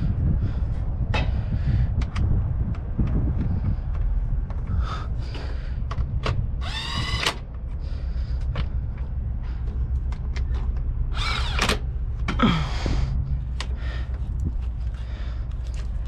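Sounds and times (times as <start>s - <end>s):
steady low rumble: 0.0s - 16.0s.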